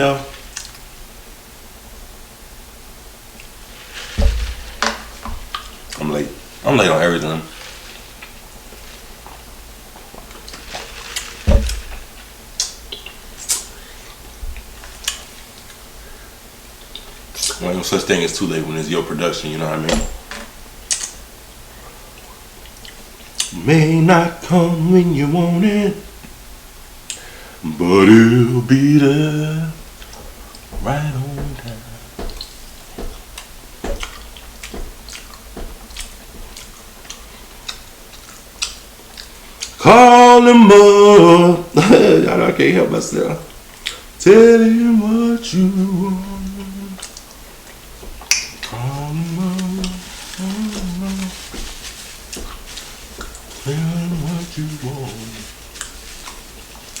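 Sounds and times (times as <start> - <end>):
low thump: 4.0 - 5.6, 11.4 - 12.2
person chewing food: 31.5 - 39.8
mouth clicks and smacks: 47.0 - 48.8.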